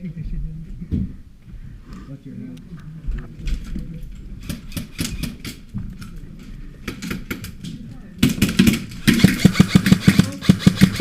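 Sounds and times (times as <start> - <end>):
airsoft gun firing full auto: 8.3 - 11.0.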